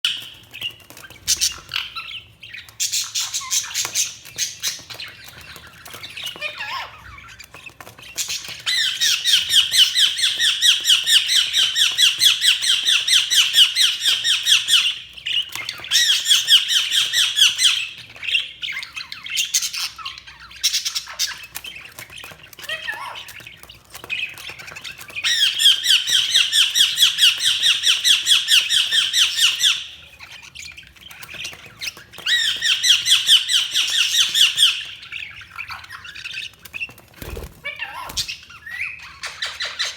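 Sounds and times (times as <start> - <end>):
budgerigars chirping: 0.1 - 39.9.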